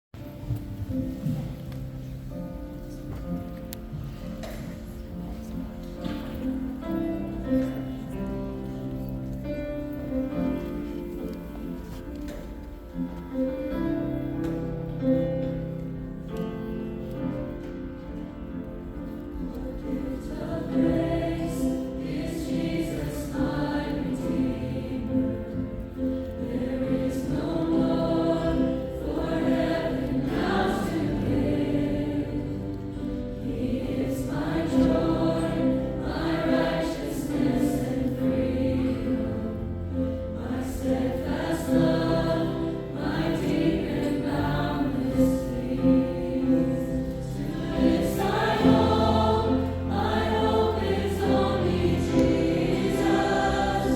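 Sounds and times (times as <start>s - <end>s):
choir singing gospel song: 19.1s - 53.9s.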